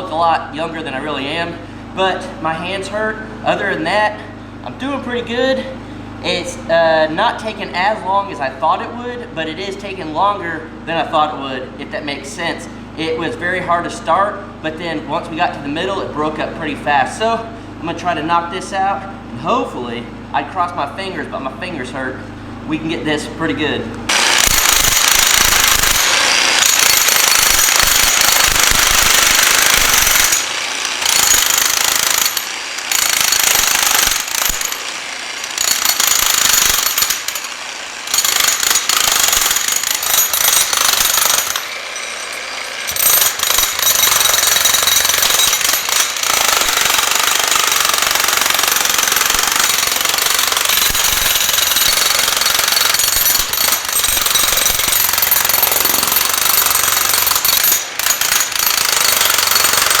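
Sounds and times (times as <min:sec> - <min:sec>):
jackhammer hammering concrete: 0:24.1 - 1:00.0.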